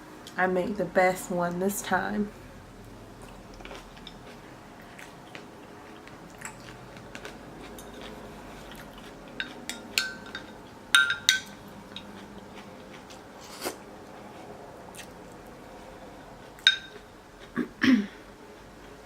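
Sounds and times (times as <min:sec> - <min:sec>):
quiet chewing: 0:02.9 - 0:09.8, 0:11.9 - 0:17.6
cutlery clinking against a dish: 0:09.4 - 0:12.1, 0:16.6 - 0:17.0.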